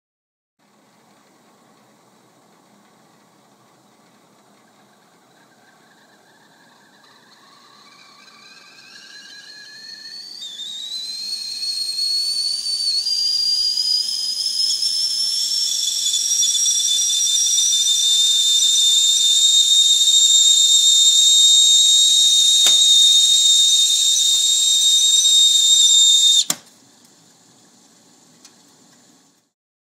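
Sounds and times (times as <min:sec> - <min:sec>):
faint hiss: 0:00.6 - 0:29.6
tea kettle whistling: 0:04.6 - 0:26.6
kettle click: 0:22.6 - 0:22.9.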